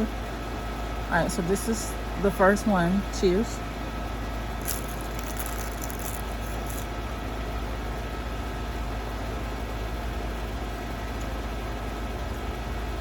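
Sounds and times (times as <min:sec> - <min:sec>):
low mechanical hum: 0:00.0 - 0:13.0
seaweed snack crackling: 0:04.6 - 0:06.9.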